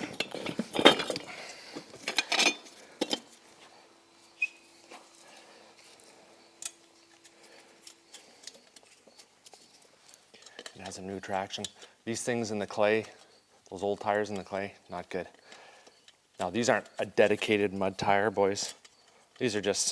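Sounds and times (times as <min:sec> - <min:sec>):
metal tools clinking: 0:00.0 - 0:03.4, 0:06.5 - 0:11.9
faint steady hum: 0:00.0 - 0:19.9.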